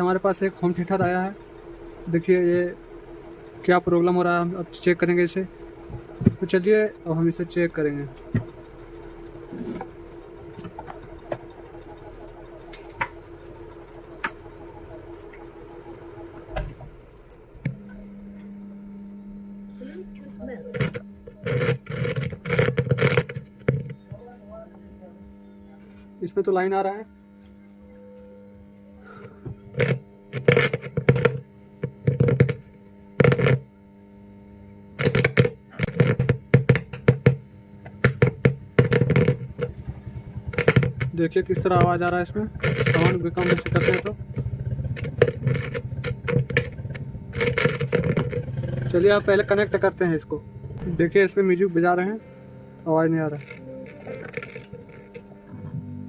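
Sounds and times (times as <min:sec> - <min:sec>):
faint steady hum: 0:00.0 - 0:56.0
sharp clicks and knocks: 0:05.8 - 0:08.7, 0:09.3 - 0:15.6, 0:20.7 - 0:24.1, 0:29.4 - 0:33.7, 0:35.0 - 0:49.9, 0:53.3 - 0:55.9.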